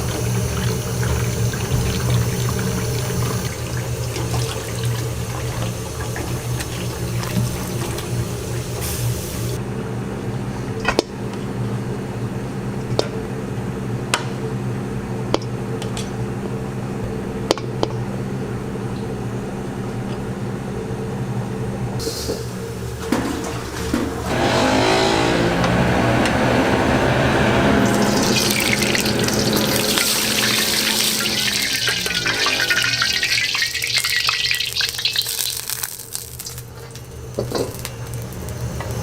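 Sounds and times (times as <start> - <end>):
tap water running into sink: 0.0 - 9.6, 27.8 - 37.9
low mechanical hum: 0.0 - 39.0.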